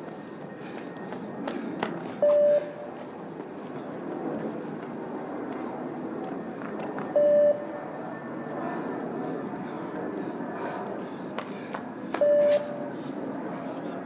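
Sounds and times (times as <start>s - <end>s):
short electronic beeps: 2.2s - 2.7s, 7.2s - 7.6s, 12.2s - 12.8s.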